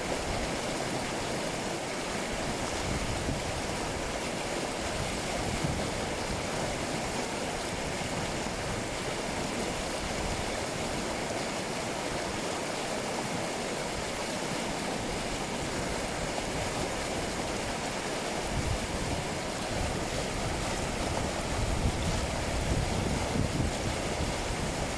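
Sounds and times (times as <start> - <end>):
small river babbling: 0.0 - 24.9.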